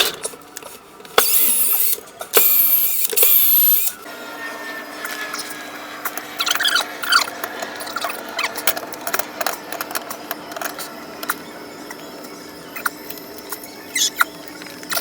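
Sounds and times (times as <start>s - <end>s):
short squeaks: 1.2s - 8.8s.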